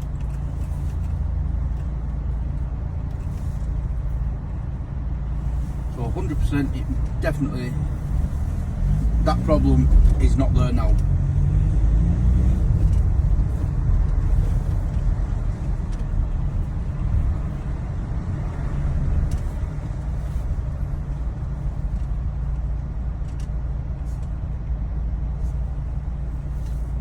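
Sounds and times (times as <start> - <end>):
road noise: 0.0 - 27.0
van engine rumble: 0.0 - 27.0.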